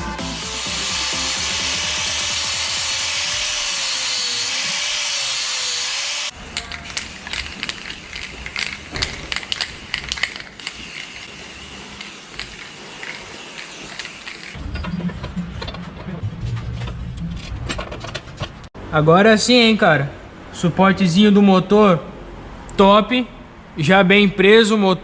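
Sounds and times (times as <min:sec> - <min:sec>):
power tool hissing: 0:00.0 - 0:14.6
metallic clicks of hand tools: 0:06.4 - 0:11.3, 0:11.9 - 0:14.6.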